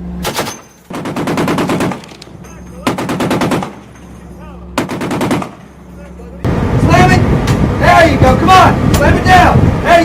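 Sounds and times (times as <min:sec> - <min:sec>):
heavy machine gun firing: 0:00.2 - 0:02.2, 0:02.8 - 0:03.8, 0:04.8 - 0:05.6.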